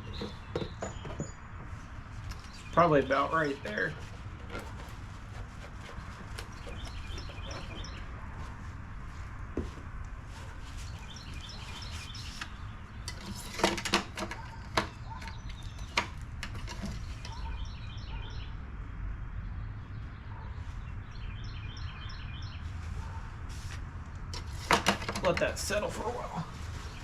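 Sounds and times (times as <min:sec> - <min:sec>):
birds chirping: 0:00.0 - 0:23.4, 0:24.1 - 0:27.0
sharp clicks and knocks: 0:12.4 - 0:17.4.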